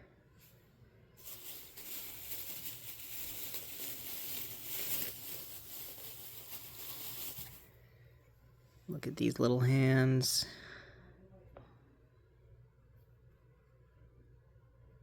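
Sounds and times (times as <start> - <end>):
packaging crinkling and rustling: 1.2 - 7.7.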